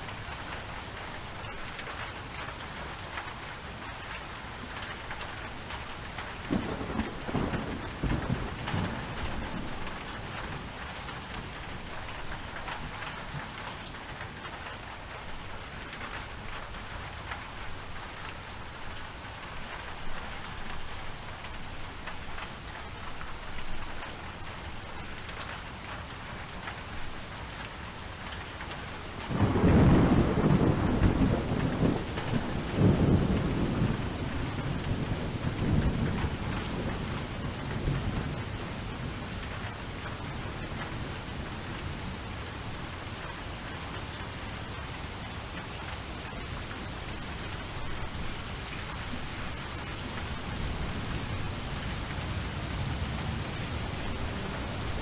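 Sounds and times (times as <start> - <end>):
steady rain falling: 0.0 - 55.0
thunder rumbling: 6.5 - 10.8, 29.2 - 39.3, 47.1 - 55.0.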